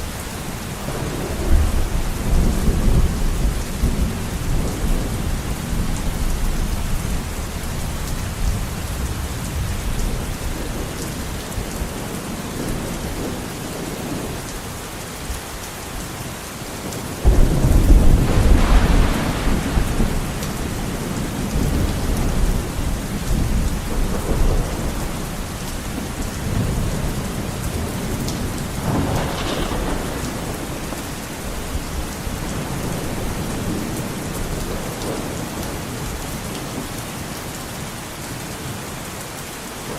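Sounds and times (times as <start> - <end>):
low thunder rumbling: 0.0 - 14.5, 16.8 - 36.9
heavy rain on a window: 0.0 - 39.9
loud thunderclap: 0.9 - 5.9, 17.2 - 27.2, 27.8 - 35.7.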